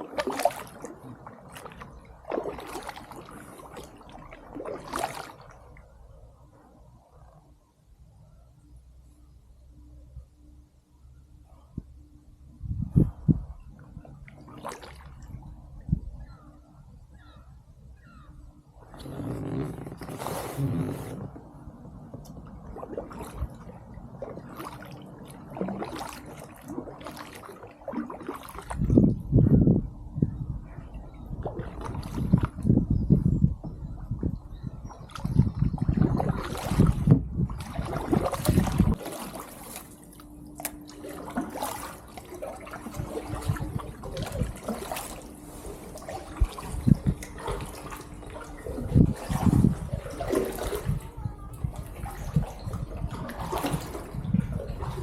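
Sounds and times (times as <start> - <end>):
kayak paddle dipping into water: 0.0 - 5.9, 14.0 - 15.4, 18.8 - 29.3, 31.2 - 32.8, 34.8 - 55.0
water splashing and gurgling: 0.0 - 6.3, 13.0 - 16.4, 18.7 - 55.0.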